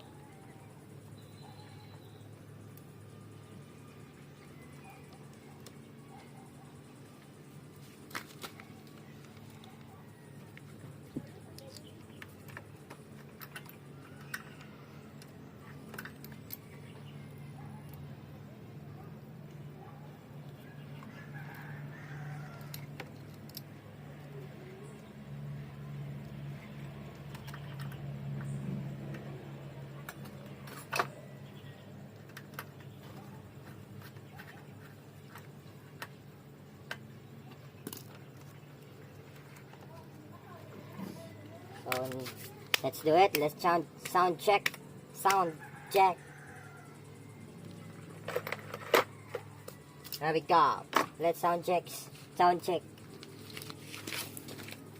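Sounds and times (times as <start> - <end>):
steady low hum: 0.0 - 54.9
clicks and metallic rattles: 10.5 - 17.0, 47.7 - 51.5.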